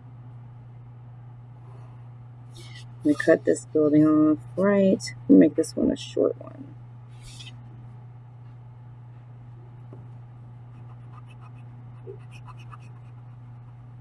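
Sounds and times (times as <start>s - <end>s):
steady low hum: 0.0s - 14.0s
pencil scratching on paper: 10.7s - 13.7s.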